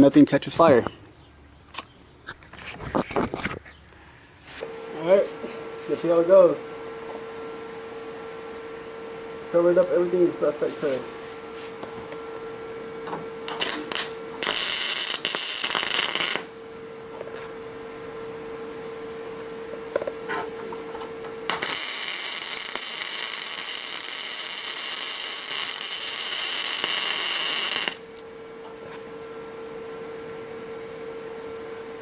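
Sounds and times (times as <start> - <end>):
steady welder hum: 4.6 - 31.6
arc welding crackling: 13.4 - 16.7, 21.3 - 28.2.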